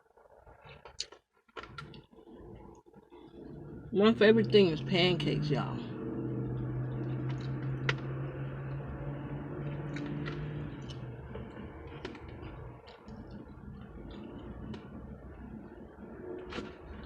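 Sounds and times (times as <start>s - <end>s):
steady low hum: 1.6s - 17.0s
chewing and wet mouth sounds: 6.5s - 9.0s, 9.6s - 17.0s.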